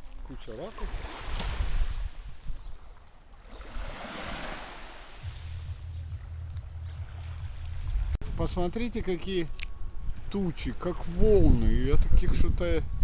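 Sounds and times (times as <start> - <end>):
waves washing onto stony shore: 0.0 - 2.5, 3.4 - 5.5
wind rumble on microphone: 5.2 - 13.0.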